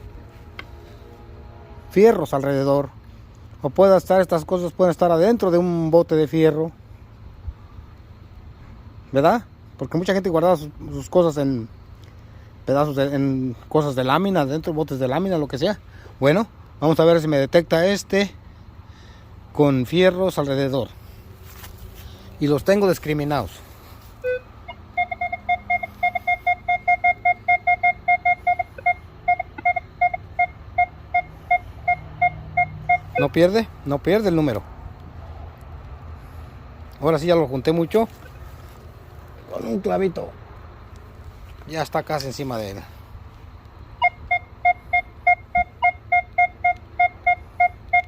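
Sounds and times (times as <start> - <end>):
metal detector beeping: 24.2 - 33.6, 44.0 - 48.0.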